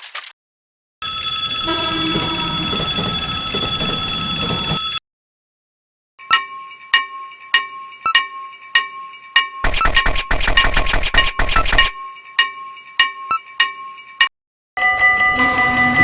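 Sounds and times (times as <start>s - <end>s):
railroad crossing warning bell: 1.0s - 5.0s, 6.2s - 16.0s
noisy sound effect with ringing tones: 9.6s - 12.0s.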